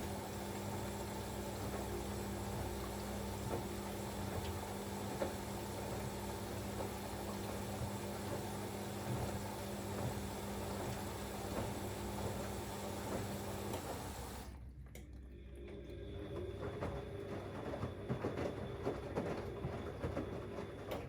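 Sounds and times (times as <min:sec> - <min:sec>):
water hissing into washing machine: 0:00.0 - 0:14.6
washing machine humming: 0:00.0 - 0:21.0.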